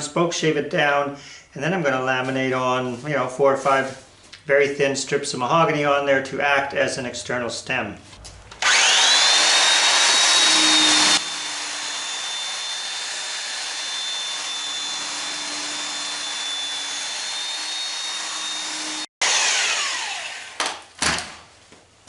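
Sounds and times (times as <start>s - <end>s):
belt sander whine: 8.5s - 20.6s.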